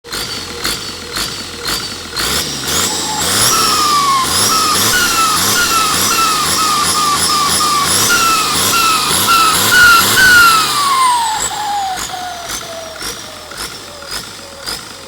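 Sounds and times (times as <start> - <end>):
engine revving blips: 0.1 - 15.0
turbo whistle: 2.8 - 13.2.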